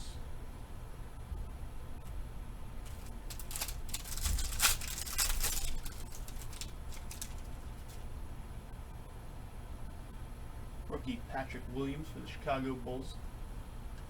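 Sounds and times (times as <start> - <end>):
trading cards clicking and rustling: 2.8 - 8.1.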